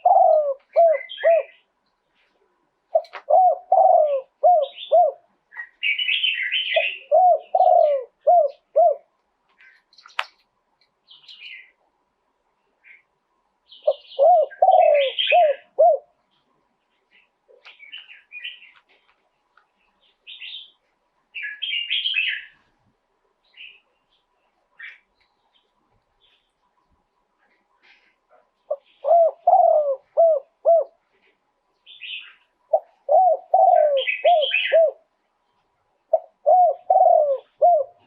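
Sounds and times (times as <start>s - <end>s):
dove cooing: 0.0s - 1.7s, 2.9s - 9.2s, 13.8s - 16.2s, 27.9s - 31.3s, 31.9s - 35.1s, 36.1s - 38.0s
small birds chirping: 0.0s - 38.0s.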